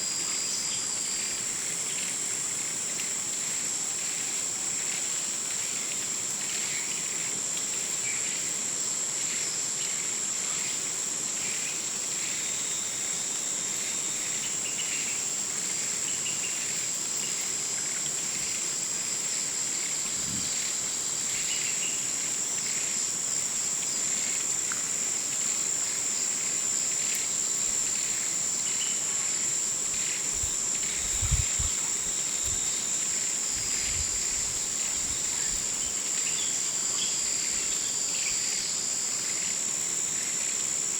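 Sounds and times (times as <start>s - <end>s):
high-pitched insect drone: 11.4s - 40.9s.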